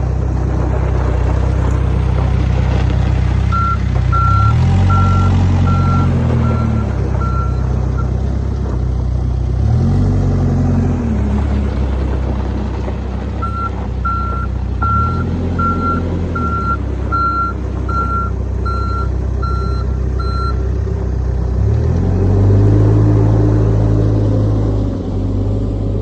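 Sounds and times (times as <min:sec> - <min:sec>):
diesel engine revving: 0:00.0 - 0:26.0
reverse alarm beeping: 0:03.5 - 0:08.1, 0:13.4 - 0:20.6.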